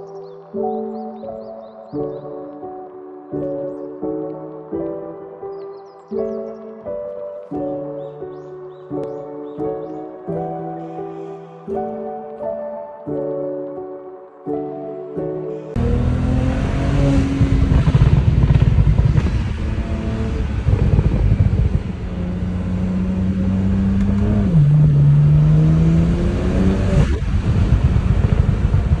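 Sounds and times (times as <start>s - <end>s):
car engine rumbling: 15.8s - 29.0s.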